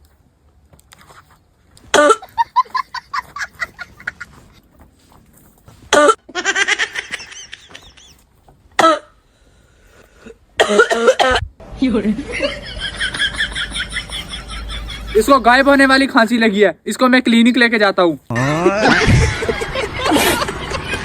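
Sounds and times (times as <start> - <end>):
man coughing: 10.6 - 11.4.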